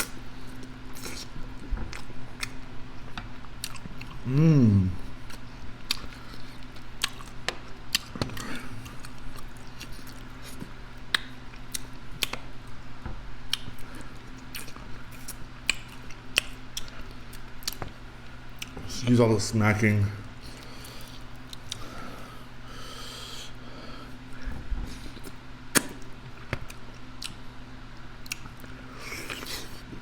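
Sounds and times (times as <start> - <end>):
chewing with wet lip smacking: 0.0 - 4.2, 5.2 - 12.5, 13.5 - 18.9, 20.4 - 21.9, 24.9 - 27.5, 28.2 - 30.0
steady low hum: 0.0 - 30.0.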